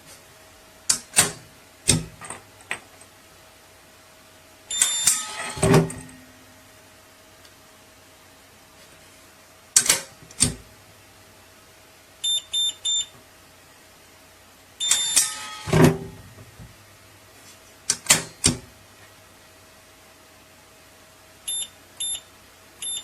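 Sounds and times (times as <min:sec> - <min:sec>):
high electronic beeps: 0:14.8 - 0:15.2, 0:21.5 - 0:22.2
heavy lock clunk: 0:17.9 - 0:18.6.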